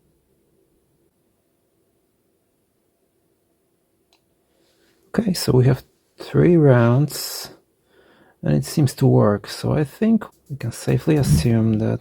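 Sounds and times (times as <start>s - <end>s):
low steady hum: 10.9s - 12.0s.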